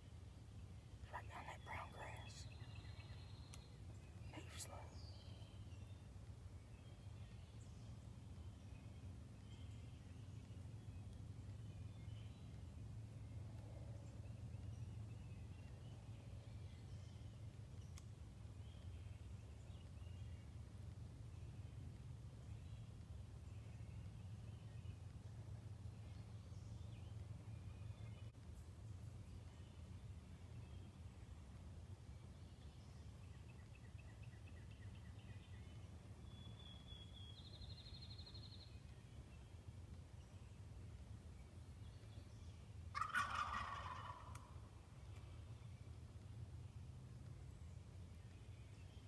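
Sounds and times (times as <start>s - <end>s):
faint songbirds singing: 0.0s - 49.0s
faint bird chirps: 1.0s - 6.1s.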